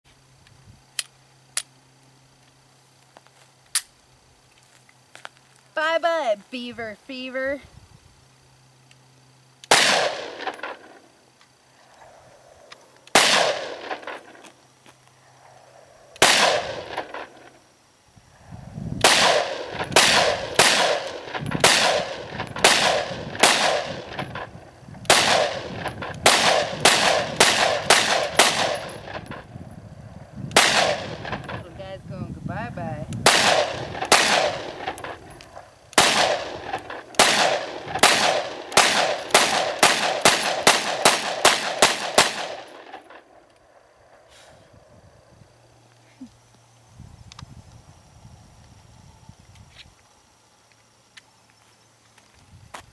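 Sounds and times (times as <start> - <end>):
pistol shots: 9.6 - 10.9, 13.1 - 14.4, 16.2 - 17.3, 19.0 - 24.4, 25.1 - 29.3, 30.5 - 31.6, 33.2 - 35.2, 35.9 - 43.2.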